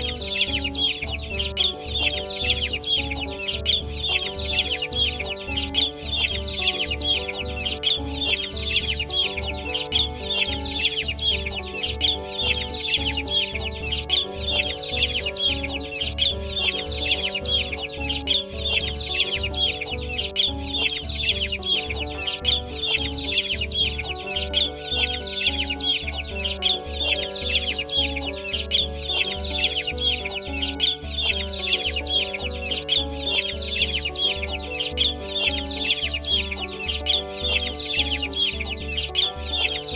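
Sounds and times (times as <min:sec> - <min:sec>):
background music with beat: 0:00.0 - 0:39.9
chickens clucking and peeping: 0:00.0 - 0:39.9.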